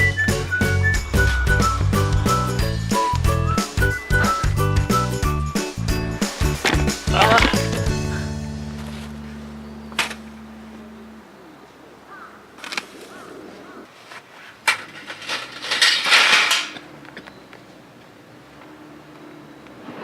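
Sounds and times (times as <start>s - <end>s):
held music chord: 0.0s - 11.8s
short rustling clatter: 14.0s - 16.9s.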